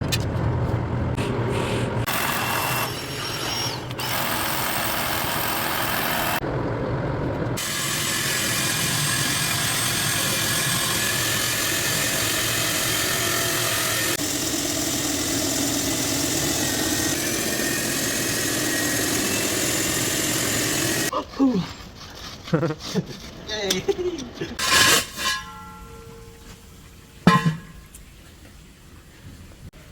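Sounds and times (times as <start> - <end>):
core drill grinding concrete: 2.0 - 6.4, 7.6 - 21.1.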